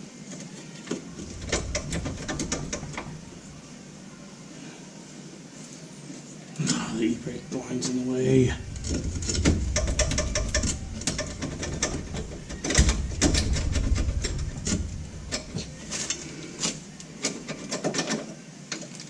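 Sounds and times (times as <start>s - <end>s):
low handling rumble: 1.1s - 4.1s, 6.9s - 17.2s.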